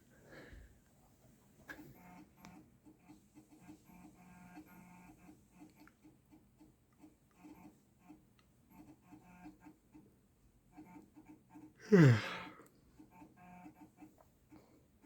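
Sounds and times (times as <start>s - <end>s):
floppy drive motor whirring: 1.7s - 5.9s.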